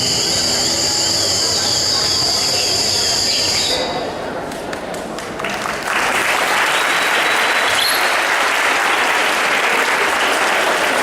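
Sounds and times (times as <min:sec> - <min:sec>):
audience applauding: 0:04.6 - 0:11.0.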